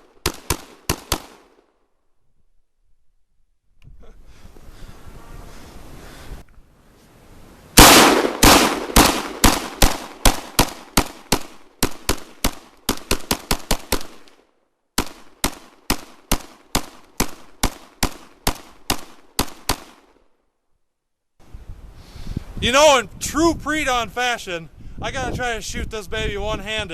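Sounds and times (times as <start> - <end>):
rapid pistol gunshots: 0.1 - 1.6, 7.8 - 14.4, 15.0 - 20.1.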